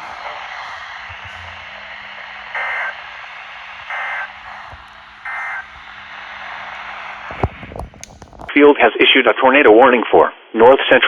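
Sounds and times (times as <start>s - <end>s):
low hum: 0.0s - 8.5s
radio hiss: 0.0s - 8.5s.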